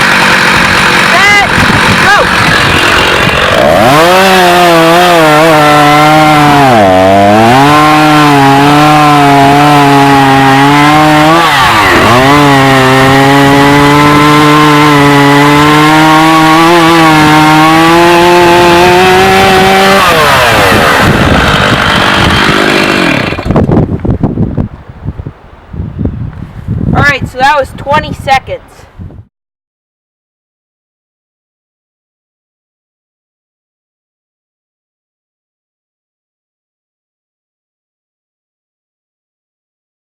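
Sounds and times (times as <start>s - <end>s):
chainsaw cutting wood: 0.0s - 23.9s.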